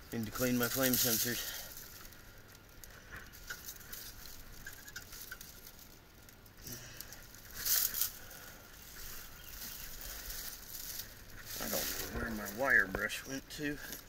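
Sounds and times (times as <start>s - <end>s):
rustling scrape: 0.4s - 6.0s, 6.9s - 14.0s
hand tools clicking and rattling: 3.1s - 5.9s.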